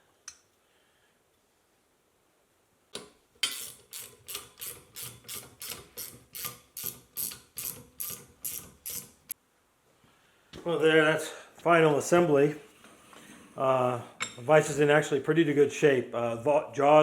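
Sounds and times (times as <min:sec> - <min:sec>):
ratchet wrench clicking: 0:03.4 - 0:09.4.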